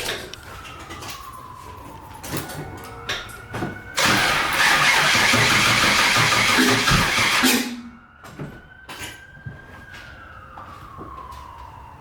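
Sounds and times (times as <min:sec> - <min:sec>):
engine starter cranking: 0:04.0 - 0:07.8.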